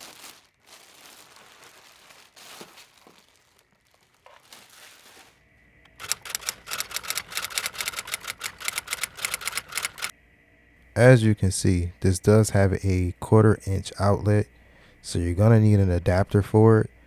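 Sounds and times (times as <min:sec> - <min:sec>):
packaging crinkling and rustling: 0:00.0 - 0:05.5
fast sharp clicks: 0:05.9 - 0:10.1.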